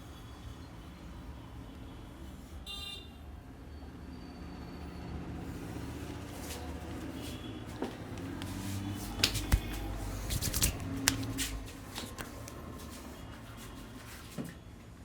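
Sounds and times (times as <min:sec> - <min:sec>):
hands slapping on skin: 0:09.0 - 0:12.6.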